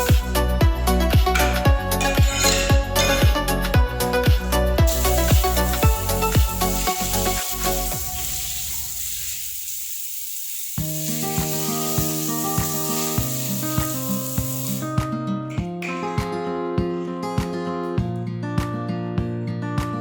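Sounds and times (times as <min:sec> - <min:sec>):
background music: 0:00.0 - 0:08.6
plucked guitar music: 0:00.6 - 0:04.9, 0:14.8 - 0:20.0
steady hiss: 0:04.9 - 0:14.9.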